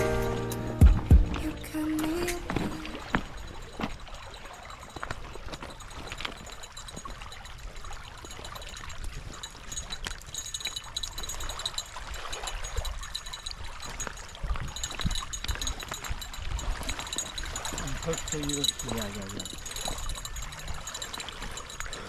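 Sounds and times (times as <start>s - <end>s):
water running: 0.0s - 4.9s, 17.0s - 22.0s
small clicks and ticks: 2.0s - 22.0s.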